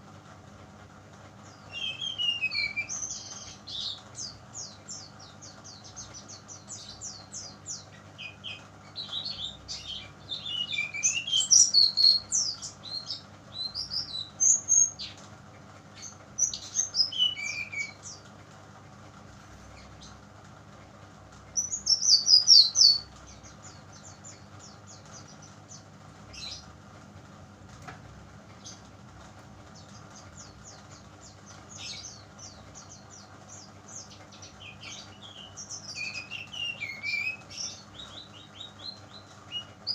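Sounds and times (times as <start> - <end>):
bird twittering song: 1.4 - 15.2, 15.9 - 18.3, 21.6 - 26.7, 29.7 - 39.9.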